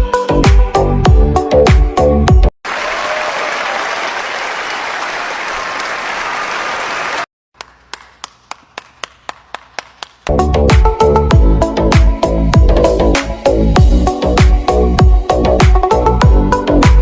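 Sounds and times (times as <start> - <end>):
crowd applause: 2.6 - 10.1.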